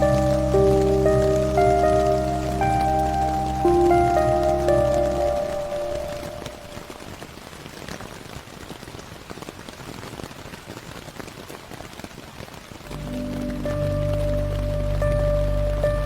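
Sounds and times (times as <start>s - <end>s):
slow ambient music with bass drone: 0.0s - 6.4s, 12.9s - 16.0s
rain pattering: 0.0s - 16.0s.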